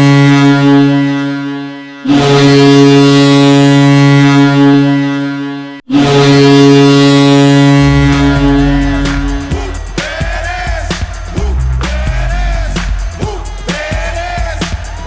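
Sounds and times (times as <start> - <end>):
air horn blasts: 0.0 - 15.0
bass beat of music: 7.6 - 15.0.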